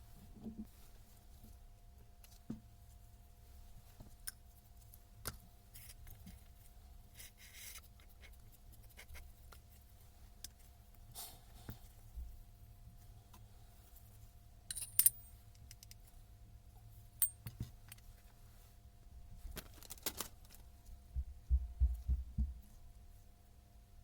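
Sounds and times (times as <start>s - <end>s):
faint steady hum: 0.0s - 24.0s
small metal parts clinking: 14.7s - 16.0s.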